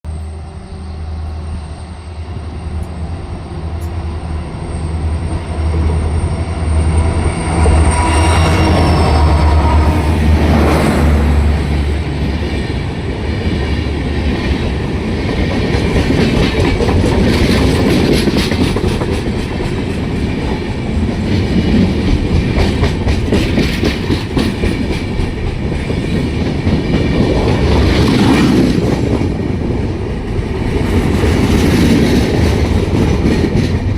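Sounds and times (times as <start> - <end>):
locomotive humming: 0.1 - 33.9
train wheels clattering over rail joints: 14.3 - 20.6, 21.2 - 29.4.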